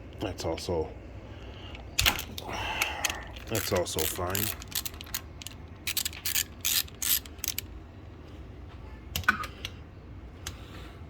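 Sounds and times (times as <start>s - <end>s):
socket ratchet clicking: 3.0s - 7.7s.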